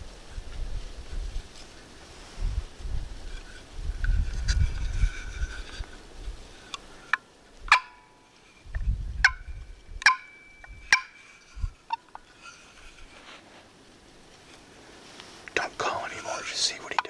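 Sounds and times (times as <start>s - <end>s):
wind rumbling on microphone: 0.0s - 7.9s, 8.6s - 13.2s
wild turkey calling: 6.5s - 13.3s, 15.6s - 17.0s.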